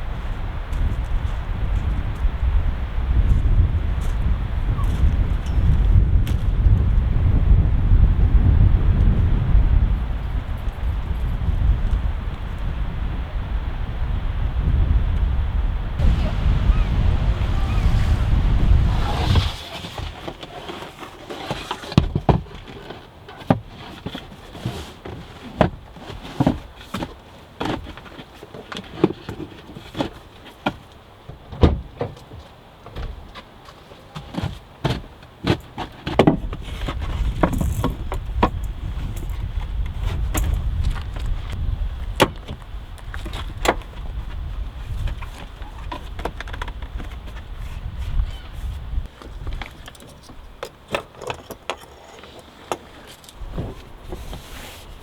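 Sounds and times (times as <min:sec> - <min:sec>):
low wind rumble: 0:00.0 - 0:21.0, 0:36.8 - 0:49.6.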